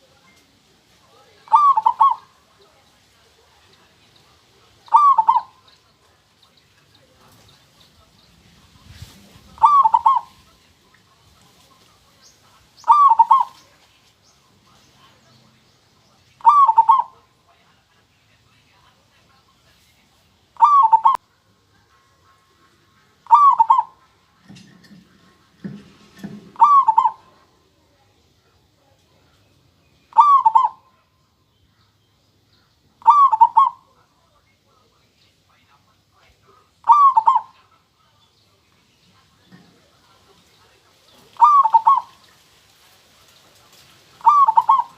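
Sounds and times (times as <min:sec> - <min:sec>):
dove cooing: 0:01.2 - 0:07.8, 0:08.8 - 0:10.6, 0:12.8 - 0:13.8, 0:16.4 - 0:17.3, 0:20.6 - 0:21.2, 0:23.2 - 0:24.8, 0:25.5 - 0:27.5, 0:30.1 - 0:30.9, 0:33.0 - 0:33.9, 0:36.5 - 0:37.8, 0:39.6 - 0:42.4, 0:43.3 - 0:44.9.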